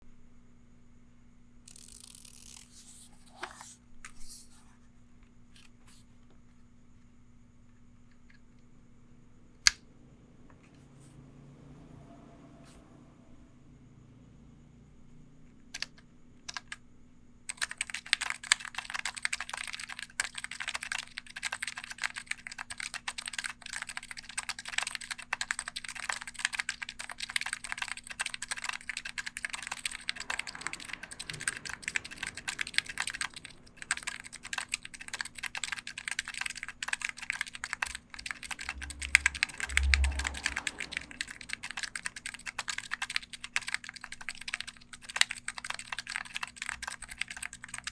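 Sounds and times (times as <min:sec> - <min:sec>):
keyboard typing: 0:15.7 - 0:16.8, 0:17.5 - 0:47.9.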